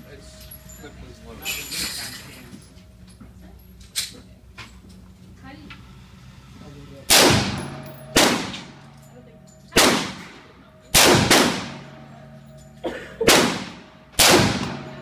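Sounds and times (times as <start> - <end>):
rifle shots echoing: 7.1 - 8.8, 9.8 - 12.0, 13.2 - 15.0.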